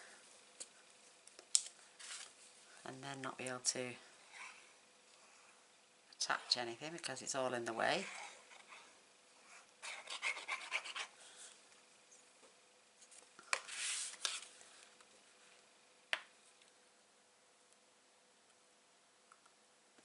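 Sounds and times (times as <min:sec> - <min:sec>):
card rustling: 0:13.0 - 0:14.6.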